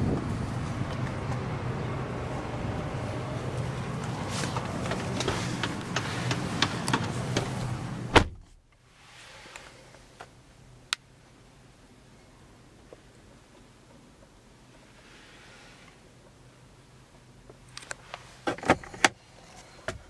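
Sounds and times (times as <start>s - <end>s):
steady outdoor hum: 0.0s - 20.0s
car door shutting with thump: 4.5s - 8.6s.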